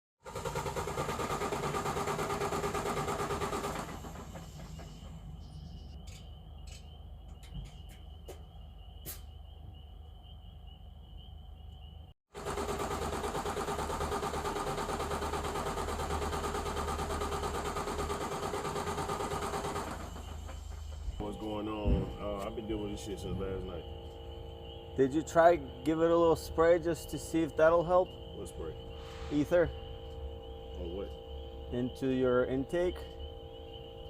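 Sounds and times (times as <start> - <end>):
diesel engine cranking: 0.2 - 6.0, 12.4 - 23.9.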